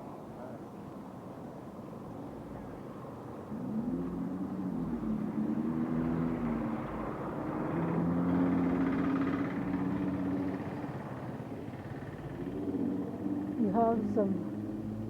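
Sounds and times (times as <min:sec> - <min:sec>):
vehicle engine passing by: 0:03.5 - 0:15.0.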